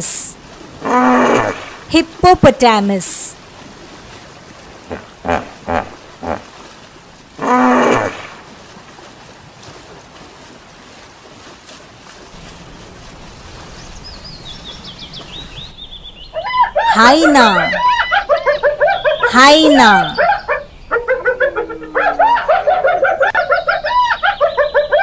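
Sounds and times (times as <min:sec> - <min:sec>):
hippopotamus call: 0:04.9 - 0:06.5, 0:16.4 - 0:25.0.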